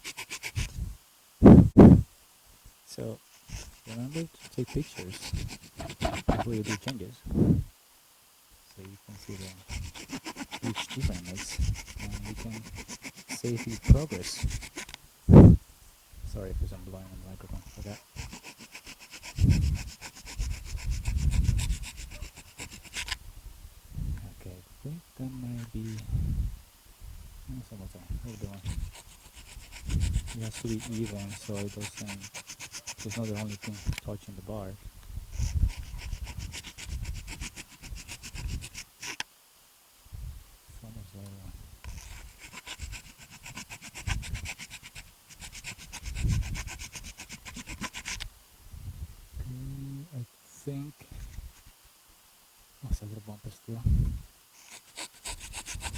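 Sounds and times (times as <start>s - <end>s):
hand tool rasping strokes: 0.0s - 0.7s, 3.3s - 7.0s, 9.1s - 15.0s, 17.6s - 23.2s, 25.6s - 26.0s, 28.2s - 34.6s, 35.4s - 39.2s, 41.8s - 48.2s, 54.6s - 55.9s
rapid scraping on metal: 0.0s - 0.7s, 3.4s - 7.0s, 9.1s - 15.0s, 17.6s - 23.2s, 28.3s - 34.1s, 35.4s - 39.2s, 41.9s - 48.2s, 54.6s - 55.9s
breath on microphone: 19.4s - 22.3s.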